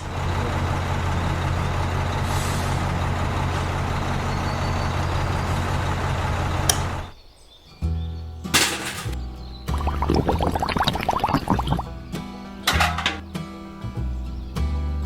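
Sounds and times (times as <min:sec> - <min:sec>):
heavy engine humming: 0:00.0 - 0:07.2.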